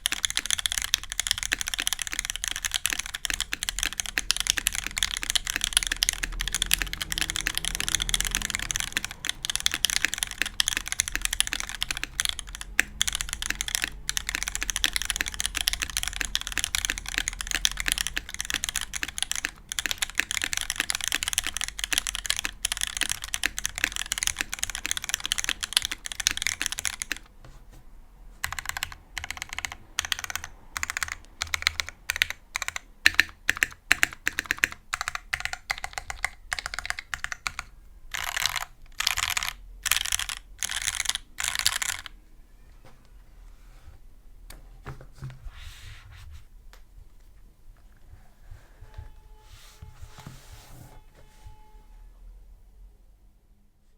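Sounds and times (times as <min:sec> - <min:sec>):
mechanical keyboard typing: 0:00.0 - 0:27.3, 0:28.4 - 0:42.2.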